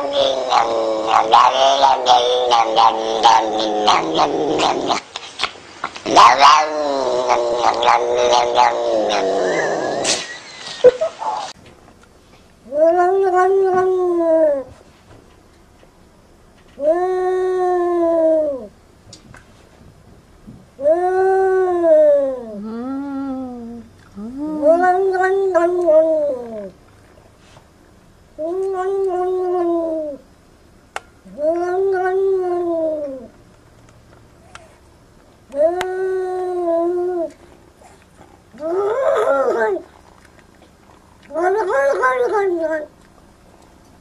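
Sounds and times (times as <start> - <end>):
cat yowling: 31.3 - 33.3.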